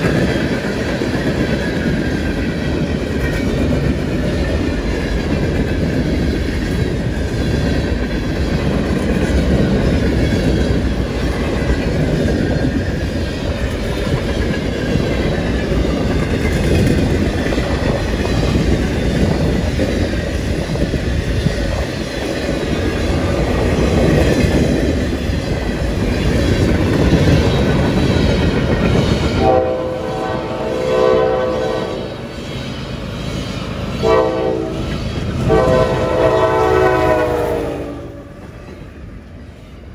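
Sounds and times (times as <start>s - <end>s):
freight train rumbling past: 0.0s - 39.9s
locomotive horn: 29.4s - 32.3s, 34.0s - 38.4s.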